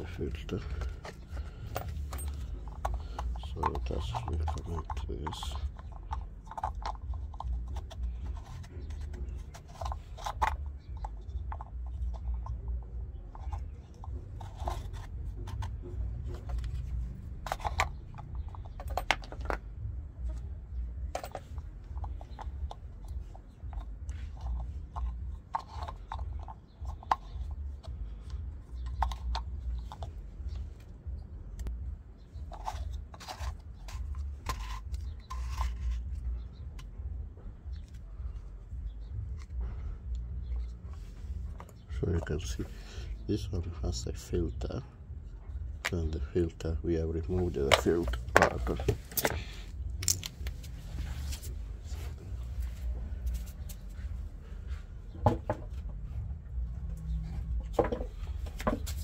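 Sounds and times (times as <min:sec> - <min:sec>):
pump parts clicking and scraping: 0:00.0 - 0:59.0
steady low rumble: 0:27.3 - 0:59.0.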